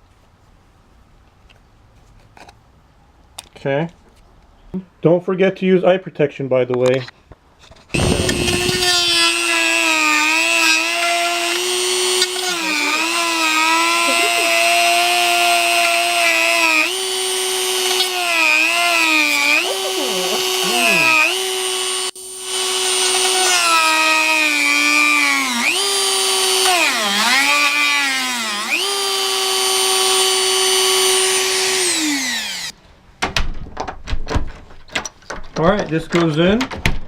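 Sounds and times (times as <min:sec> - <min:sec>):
rotary tool whining: 0:07.9 - 0:32.7.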